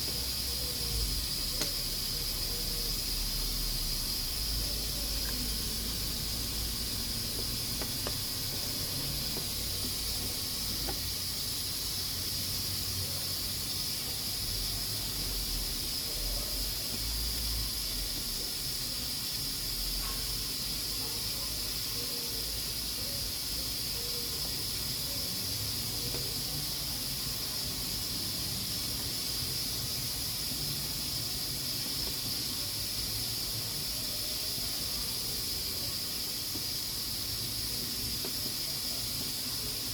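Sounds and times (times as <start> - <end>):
pressure cooker hissing: 0.0 - 39.9.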